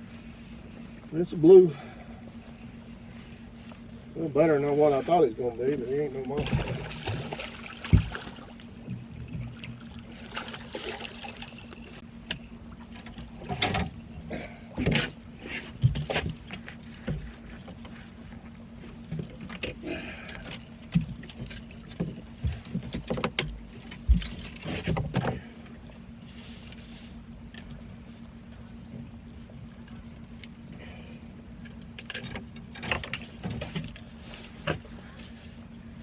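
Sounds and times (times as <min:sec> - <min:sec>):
steady low hum: 0:00.0 - 0:36.0
knocks and clatter in boat: 0:03.8 - 0:25.9, 0:31.6 - 0:35.4.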